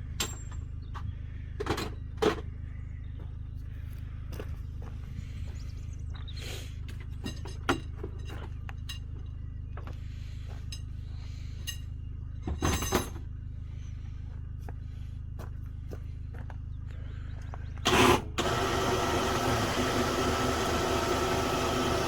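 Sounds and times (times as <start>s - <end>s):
steady low hum: 0.0s - 22.0s
metal clinks and knocks: 7.0s - 9.4s, 11.6s - 13.3s.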